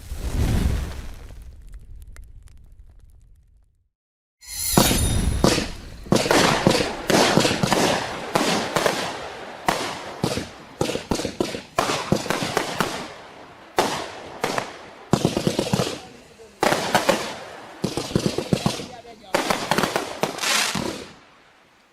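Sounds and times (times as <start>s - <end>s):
fireworks shots with crackle: 4.8s - 21.6s.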